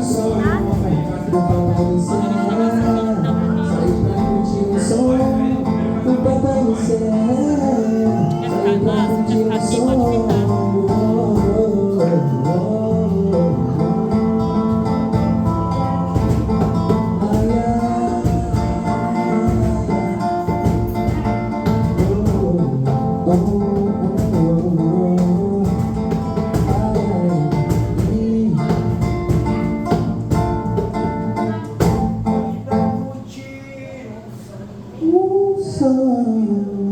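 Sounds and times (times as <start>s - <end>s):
steady beat: 0.0s - 12.0s, 13.8s - 32.9s
person singing: 0.0s - 15.0s, 15.7s - 29.2s
guitar: 0.0s - 36.9s.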